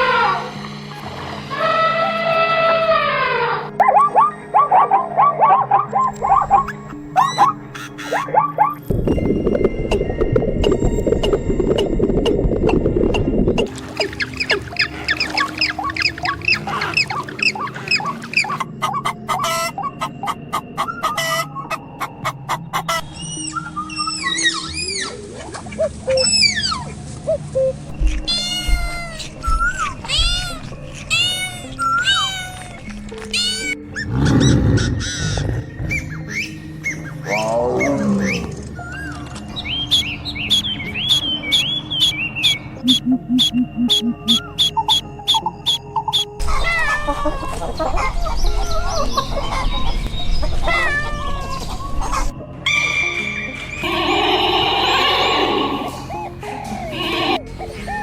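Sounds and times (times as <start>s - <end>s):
background music: 0.0s - 58.0s
low rumble: 8.9s - 13.7s
cat meowing: 28.1s - 31.6s
steady high-pitched call: 39.9s - 46.4s
chickens clucking: 42.8s - 46.4s.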